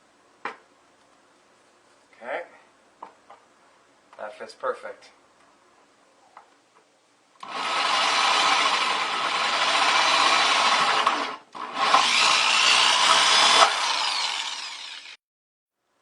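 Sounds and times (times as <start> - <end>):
electric drill cutting: 7.4 - 15.2.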